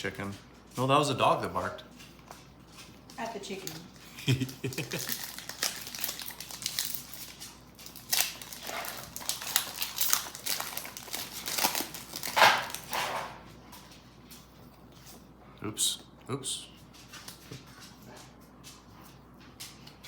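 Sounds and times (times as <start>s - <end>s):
foil wrappers crinkling: 0.8s - 14.0s.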